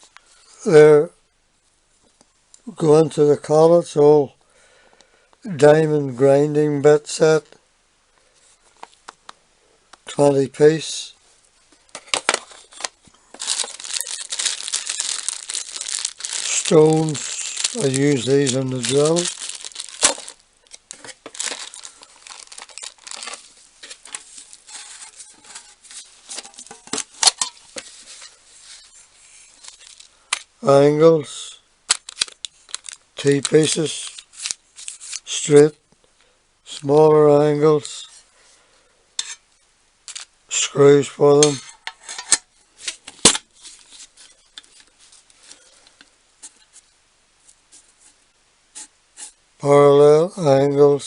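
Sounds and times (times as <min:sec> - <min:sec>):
packaging crinkling and rustling: 0:11.7 - 0:30.5, 0:31.9 - 0:35.4, 0:42.8 - 0:46.9
metal brackets and screws handled: 0:41.4 - 0:42.5.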